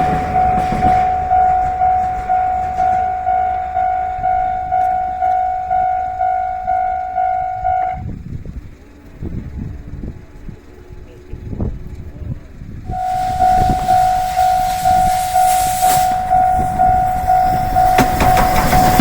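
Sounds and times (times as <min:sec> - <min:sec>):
level-crossing warning bell: 0:00.0 - 0:08.2, 0:12.9 - 0:19.0
passing train rumble: 0:00.0 - 0:19.0.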